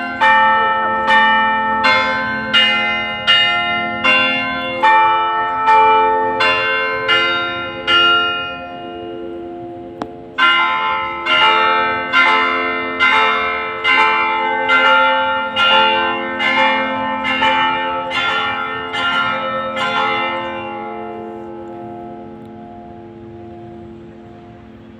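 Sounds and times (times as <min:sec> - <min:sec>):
church bells ringing: 0:00.0 - 0:24.9.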